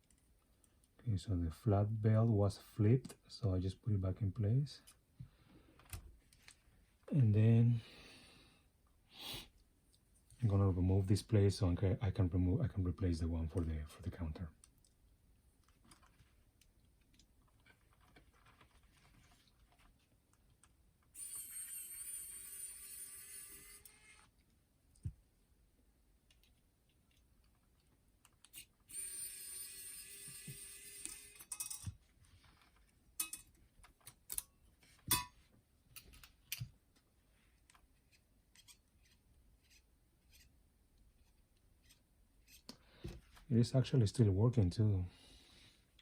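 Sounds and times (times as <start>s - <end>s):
small parts clicking and tapping: 15.6s - 19.1s, 26.2s - 35.3s
small clicks and taps of a tool: 33.2s - 34.5s.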